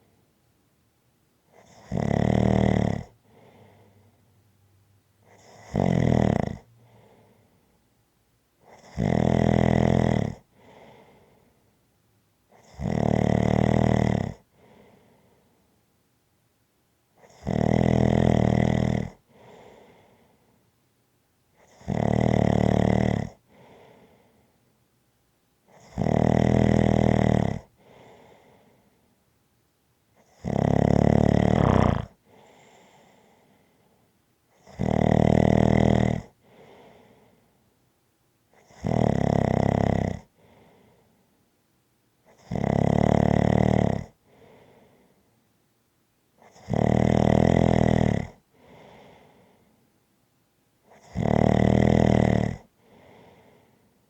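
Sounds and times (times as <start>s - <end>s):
person snoring: 30.4s - 32.2s.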